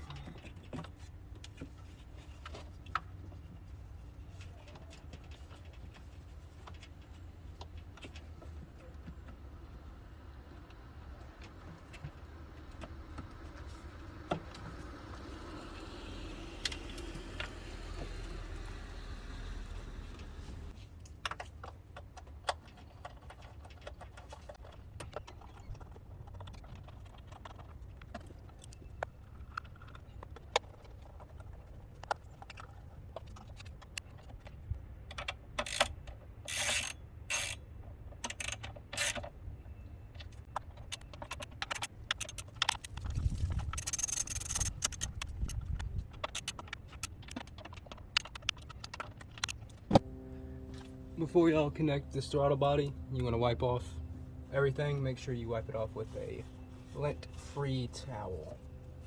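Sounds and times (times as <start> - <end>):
hand tools clicking and clanking: 35.1 - 39.3, 40.2 - 50.1.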